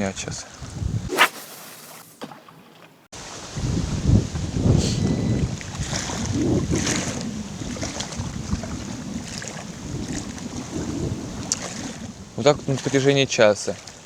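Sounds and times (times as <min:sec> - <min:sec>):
wind buffeting microphone: 0:03.2 - 0:13.3.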